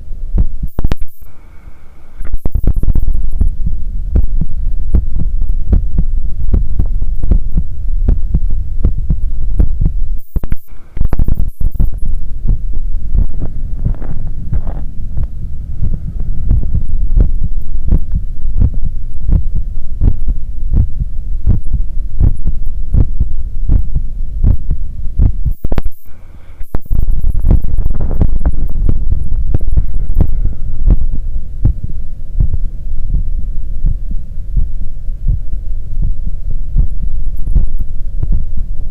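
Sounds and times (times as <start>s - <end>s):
faint breath hiss: 0.0s - 38.9s
heartbeat thumps: 0.3s - 1.4s, 2.2s - 38.9s
stethoscope rustle: 13.4s - 14.9s.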